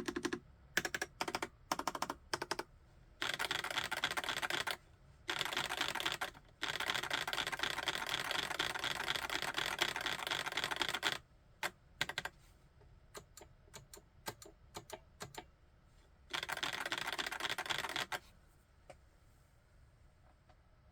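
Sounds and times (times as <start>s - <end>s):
mechanical keyboard typing: 0.0s - 11.2s, 12.0s - 12.3s, 13.2s - 15.4s, 16.3s - 18.2s.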